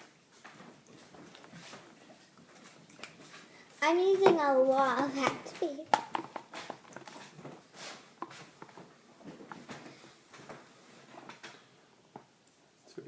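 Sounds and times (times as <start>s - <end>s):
spoon stirring slime: 0.3s - 9.7s.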